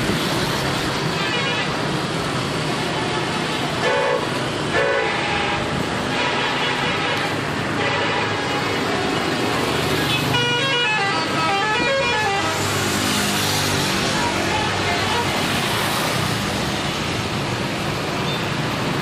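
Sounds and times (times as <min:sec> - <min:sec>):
road traffic noise: 0:00.0 - 0:19.0
musical bus air horns: 0:03.0 - 0:08.9, 0:10.1 - 0:12.9.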